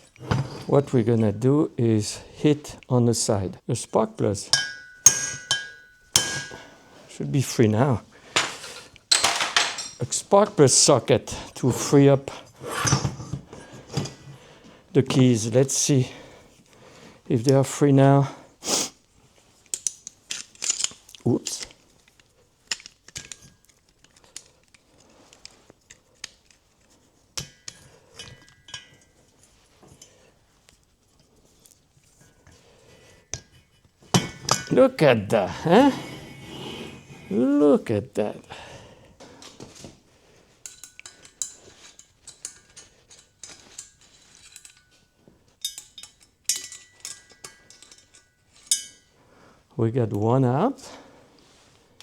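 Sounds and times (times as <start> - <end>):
ringing metal knocks: 4.5 - 6.7
light metal clinks and taps: 4.5 - 6.8, 22.1 - 30.9, 40.6 - 49.2
metal clicks of hand tools: 19.7 - 29.2, 40.6 - 49.1.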